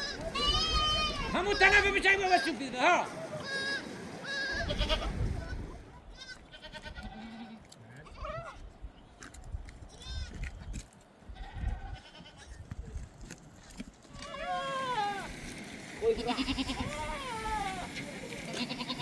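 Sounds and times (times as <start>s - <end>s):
sheep bleating: 0.0s - 2.5s, 3.3s - 8.6s, 14.2s - 15.3s, 16.0s - 19.0s.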